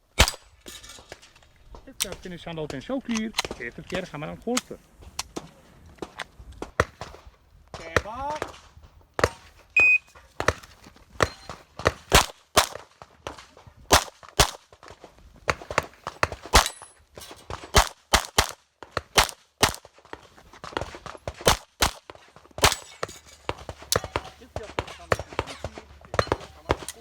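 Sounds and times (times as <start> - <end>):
pistol firing rapidly: 13.9 - 14.6, 17.7 - 19.9, 20.7 - 27.0.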